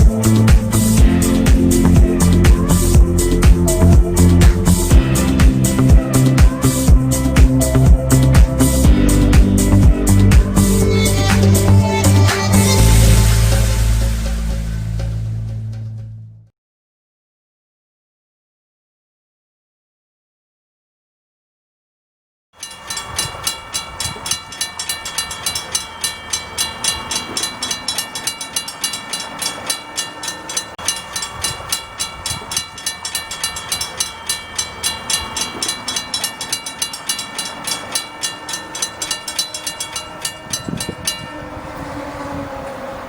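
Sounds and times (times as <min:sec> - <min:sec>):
high metallic ring: 0:22.6 - 0:42.0
train wheels clickety-clack: 0:22.6 - 0:42.8.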